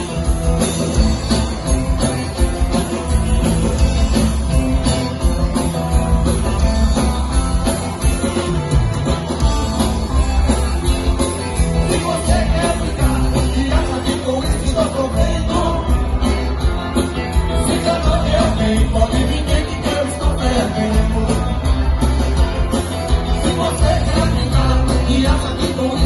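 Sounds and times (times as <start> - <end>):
song with steady beat and bass: 0.0 - 26.0.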